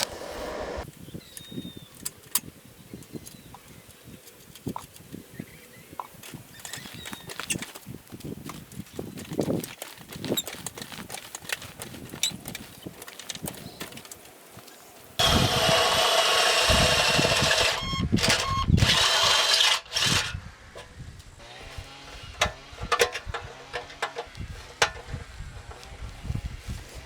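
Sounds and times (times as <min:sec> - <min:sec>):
chainsaw engine running: 0:15.2 - 0:20.4, 0:21.3 - 0:27.0.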